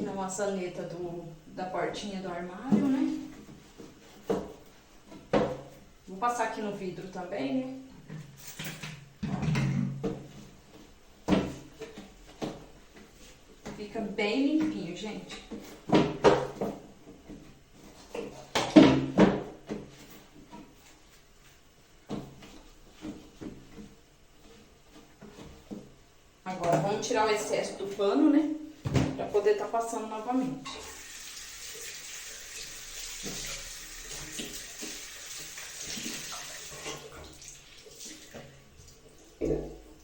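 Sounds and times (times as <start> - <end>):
cloth rinsed under water: 30.6 - 40.0
tap water running into sink: 30.7 - 39.8.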